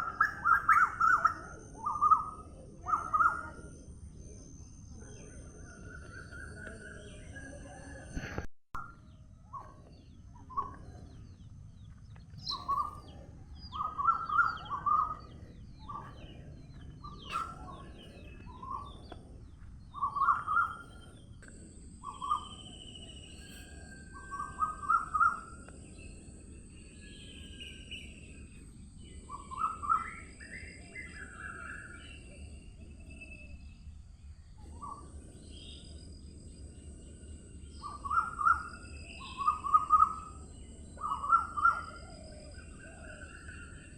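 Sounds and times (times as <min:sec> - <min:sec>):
high-pitched hum: 0:00.0 - 0:43.9
songbirds calling: 0:00.0 - 0:43.9
higher bird chirps: 0:09.5 - 0:33.9, 0:34.6 - 0:43.9.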